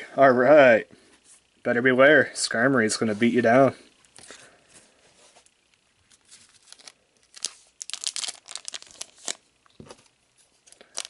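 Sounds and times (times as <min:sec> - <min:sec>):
wrapper tearing and crinkling: 0:06.1 - 0:10.0, 0:10.7 - 0:11.0.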